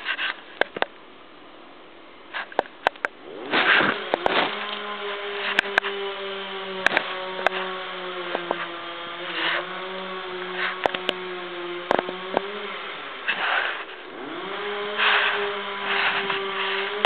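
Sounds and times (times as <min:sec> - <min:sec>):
sharp clicks: 0:02.5 - 0:04.8
chainsaw running at high speed: 0:03.2 - 0:17.0.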